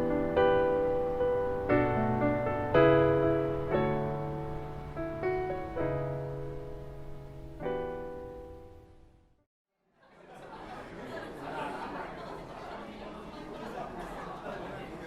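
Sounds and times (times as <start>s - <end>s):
soft piano chords: 0.0s - 9.4s.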